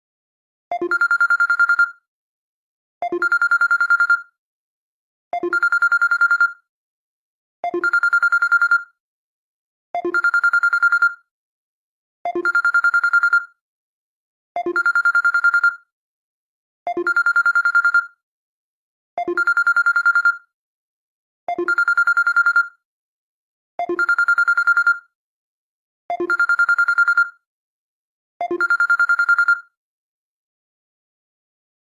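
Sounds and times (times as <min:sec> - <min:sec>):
bell-like phone ringtone with trill: 0:00.7 - 0:02.0, 0:03.0 - 0:04.3, 0:05.4 - 0:06.6, 0:07.7 - 0:09.0, 0:10.0 - 0:11.2, 0:12.3 - 0:13.6, 0:14.6 - 0:15.9, 0:16.9 - 0:18.2, 0:19.2 - 0:20.5, 0:21.5 - 0:22.8, 0:23.8 - 0:25.2, 0:26.1 - 0:27.5, 0:28.4 - 0:29.8.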